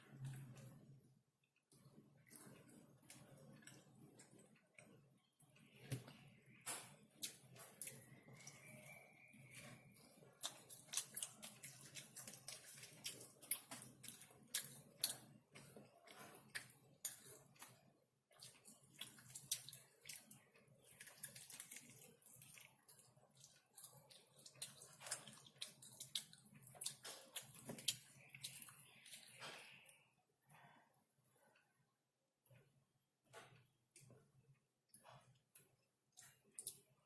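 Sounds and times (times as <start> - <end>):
wet chewing: 7.0 - 30.0.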